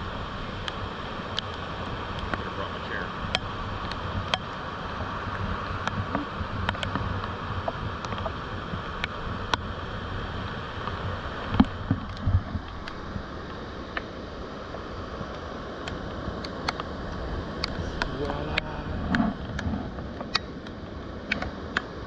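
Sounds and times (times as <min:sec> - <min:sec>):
muffled rain and surf: 0:00.0 - 0:22.0
raindrops tapping on camera case: 0:03.2 - 0:09.7, 0:10.8 - 0:14.1.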